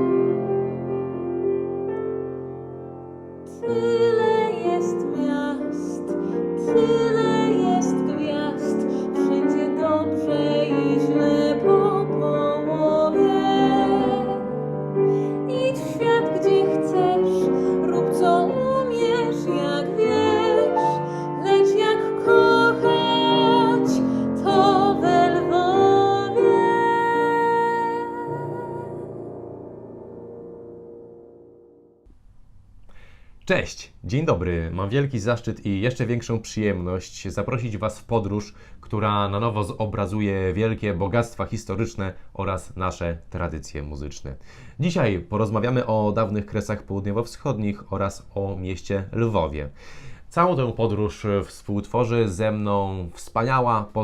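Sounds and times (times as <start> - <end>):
melody with vibrato: 0.0 - 32.0
piano: 0.0 - 33.1.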